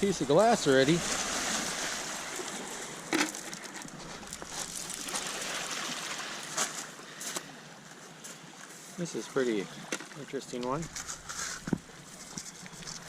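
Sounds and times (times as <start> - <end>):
waves washing over pebbles: 0.0 - 7.0.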